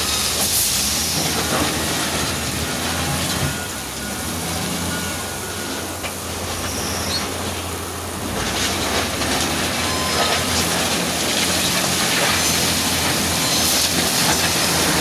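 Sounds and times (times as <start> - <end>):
diesel engine running: 0.0 - 15.0
machine working noise: 6.4 - 15.0.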